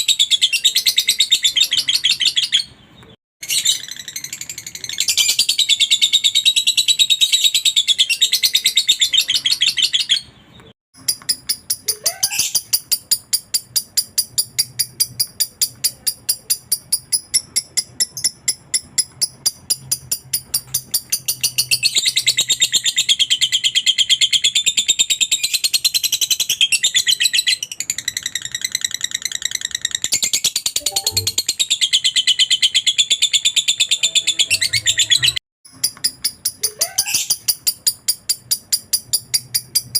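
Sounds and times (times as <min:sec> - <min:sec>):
lovebird shrill chirping chatter: 0:11.1 - 0:15.5.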